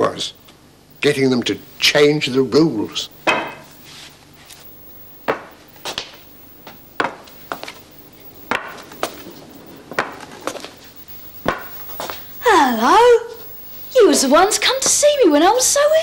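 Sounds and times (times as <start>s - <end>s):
sharp knocks of hard objects: 3.2s - 3.6s, 5.3s - 6.2s, 7.0s - 7.2s, 11.4s - 11.7s.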